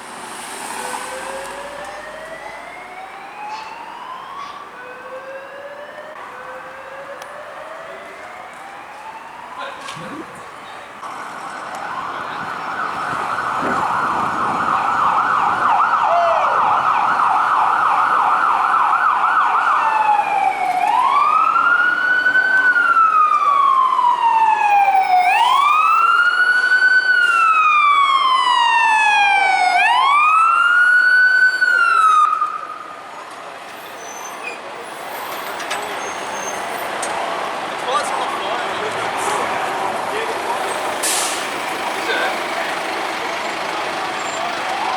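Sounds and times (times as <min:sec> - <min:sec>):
truck on the road: 0:00.0 - 0:02.7, 0:33.6 - 0:44.9
electronic siren yelping and wailing: 0:00.8 - 0:10.6, 0:11.9 - 0:26.8.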